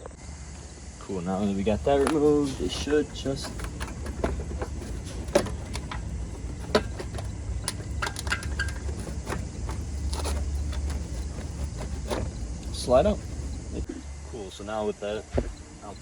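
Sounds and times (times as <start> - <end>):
steady low hum: 1.3 - 14.8
clicks of bumper parts handled: 1.4 - 13.8.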